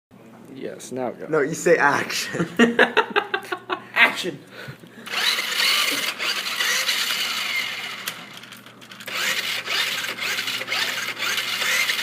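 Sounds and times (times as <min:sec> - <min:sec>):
toy car electric motor whirring: 0:05.1 - 0:12.0.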